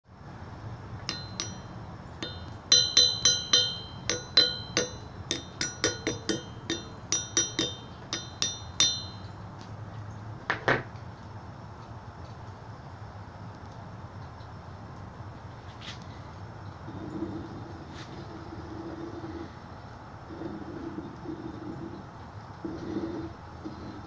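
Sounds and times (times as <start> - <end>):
metallic taps on steel object: 1.1 - 9.4.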